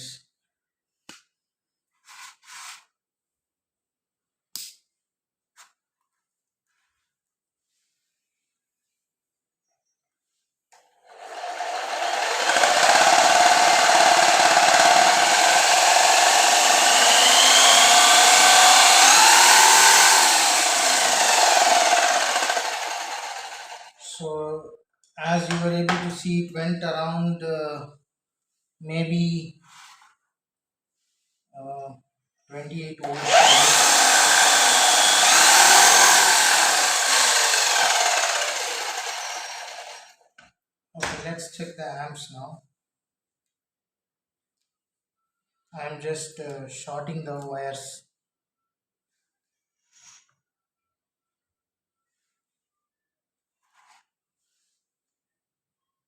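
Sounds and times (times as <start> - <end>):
electric drill whirring with whine: 10.8 - 24.0, 33.0 - 40.2.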